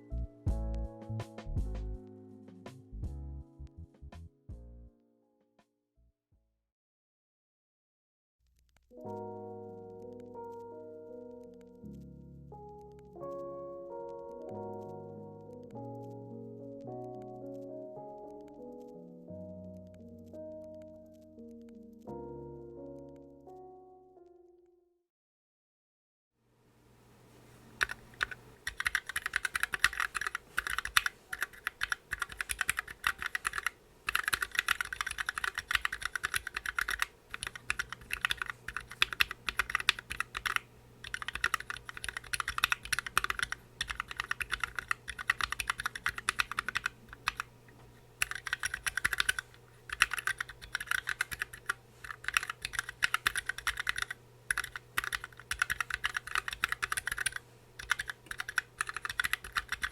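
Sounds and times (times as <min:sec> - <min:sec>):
mechanical keyboard typing: 0:27.8 - 0:47.5, 0:48.2 - 0:59.9.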